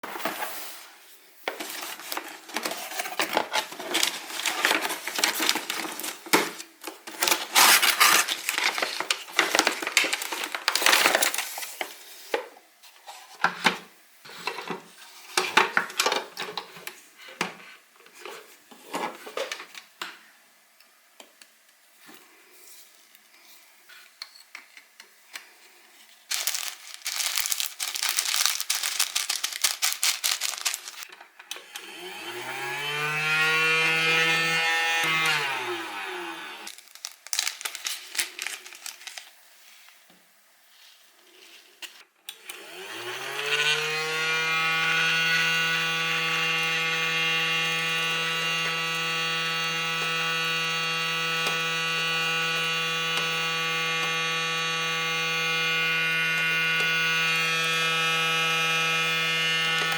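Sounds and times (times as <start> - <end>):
plastic toy clicking and rattling: 26.3 - 31.1.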